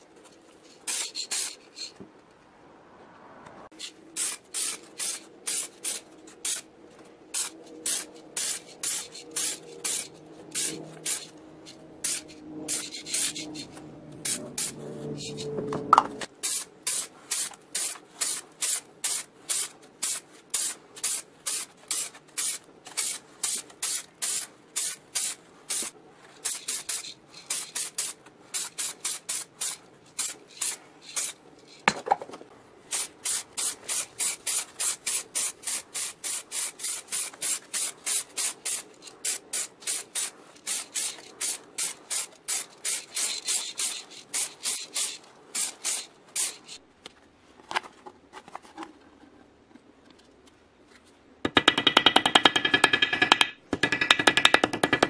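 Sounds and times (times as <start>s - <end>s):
abrasive tool scraping: 7.4s - 16.3s.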